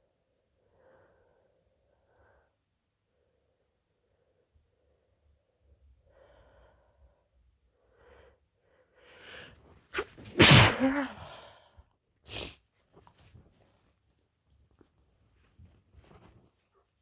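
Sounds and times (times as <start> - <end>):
woman sneezing: 10.0 - 11.4.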